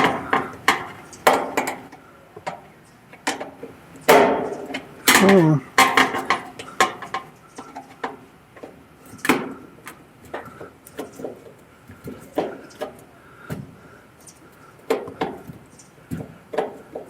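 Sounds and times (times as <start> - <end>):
metal clicks and knocks: 0.0 - 11.5.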